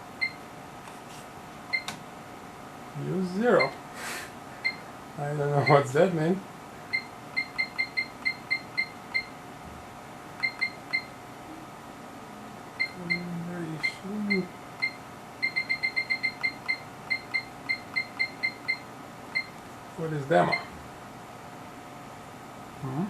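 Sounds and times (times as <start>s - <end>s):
short high beeps: 12.8s - 18.8s.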